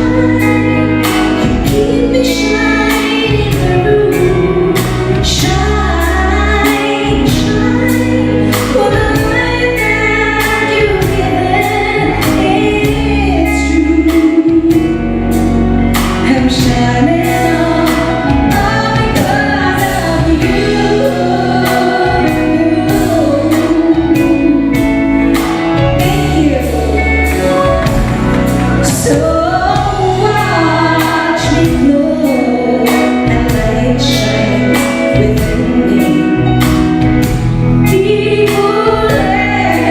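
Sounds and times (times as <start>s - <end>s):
live band playing: 0.0s - 39.9s
woman singing lead: 0.0s - 39.9s
steady drum beat: 14.2s - 34.1s.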